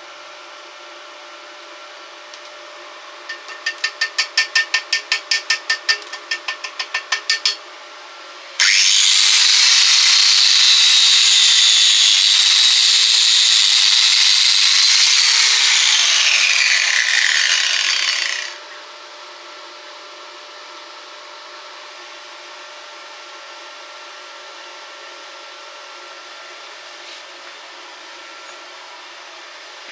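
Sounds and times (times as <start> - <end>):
angle grinder on metal: 3.3 - 7.6, 8.6 - 18.6.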